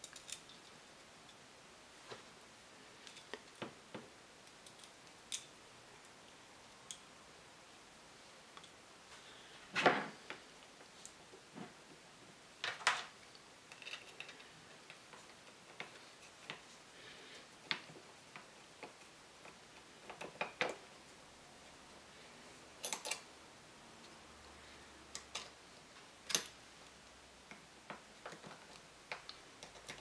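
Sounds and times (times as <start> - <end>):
metal parts and tools clicking: 0.0 - 0.7, 13.7 - 16.6, 22.8 - 23.3.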